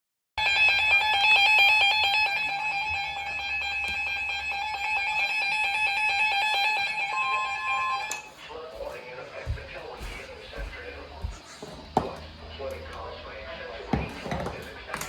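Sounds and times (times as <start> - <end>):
two-tone electronic alarm: 0.4 - 8.4.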